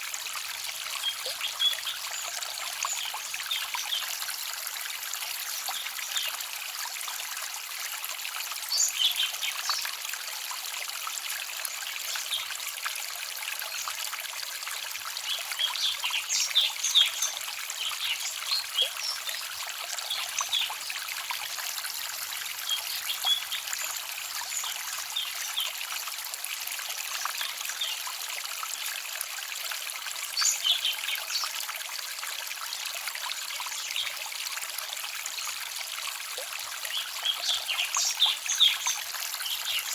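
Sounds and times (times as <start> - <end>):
stream babbling over stones: 0.0 - 39.9
small birds chirping: 15.2 - 20.9, 22.6 - 25.8, 30.4 - 31.6, 36.9 - 39.9.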